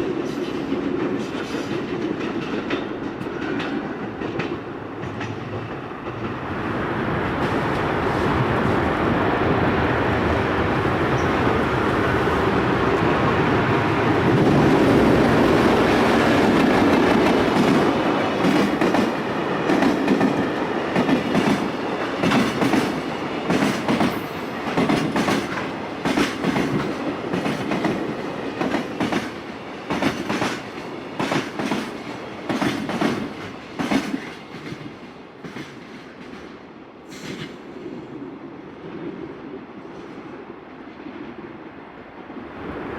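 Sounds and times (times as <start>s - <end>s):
freight train rumble: 0.0s - 42.9s.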